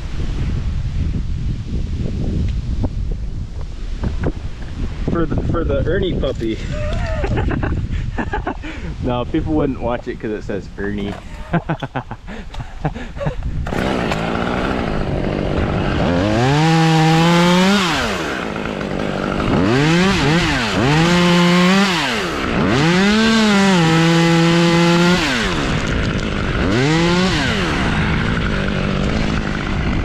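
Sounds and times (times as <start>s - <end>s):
chainsaw revving: 11.0s - 30.0s.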